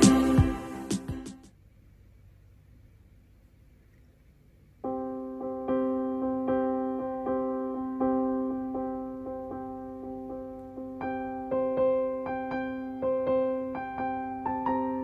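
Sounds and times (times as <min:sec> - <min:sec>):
faint hum: 0:00.0 - 0:15.0
soft electric piano melody: 0:04.8 - 0:15.0.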